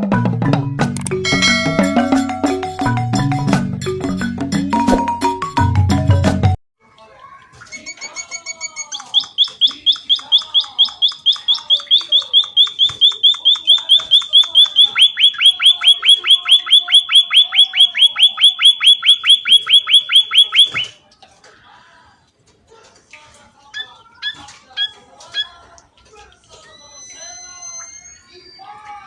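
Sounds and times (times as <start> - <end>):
bird calling in rapid sharp notes: 7.7 - 21.0, 23.8 - 25.6.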